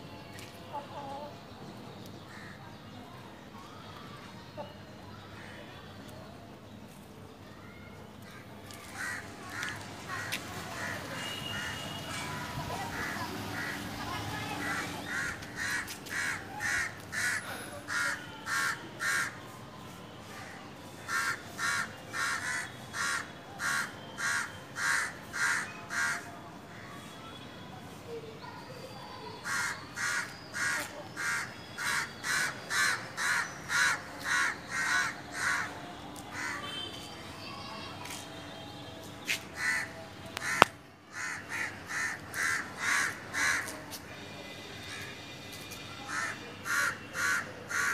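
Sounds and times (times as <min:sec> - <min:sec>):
birds cawing: 0:08.3 - 0:19.4, 0:21.1 - 0:26.3, 0:29.4 - 0:36.8, 0:39.6 - 0:43.7, 0:46.1 - 0:47.9.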